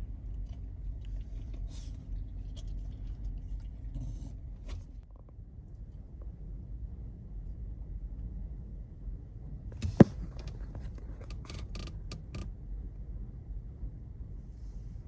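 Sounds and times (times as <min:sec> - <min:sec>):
sharp knock: 0:09.8 - 0:10.2.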